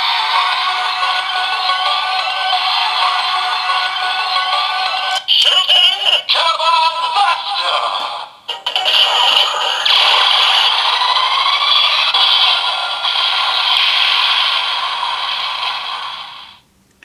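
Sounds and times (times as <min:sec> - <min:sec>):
toy electronic blast with rising tone: 0:08.6 - 0:16.6.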